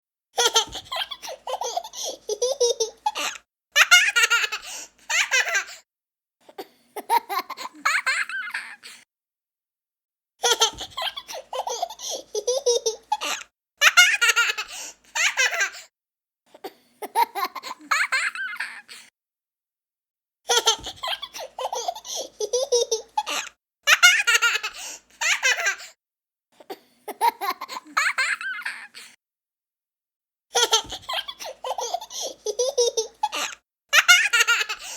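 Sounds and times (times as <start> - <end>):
young child laughing: 0.4 - 5.8, 7.0 - 9.0, 10.4 - 15.8, 20.5 - 25.9, 27.1 - 29.1, 30.6 - 34.9.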